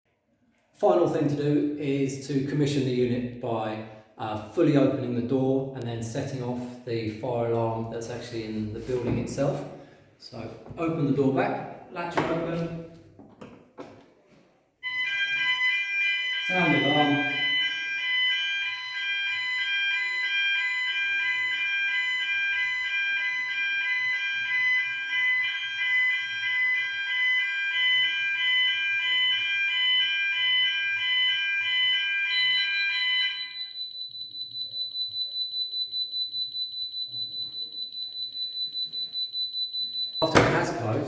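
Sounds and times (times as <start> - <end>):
fast pulsing electronic fire alarm: 14.8 - 41.0
high-pitched beep: 16.4 - 17.8, 29.8 - 41.0.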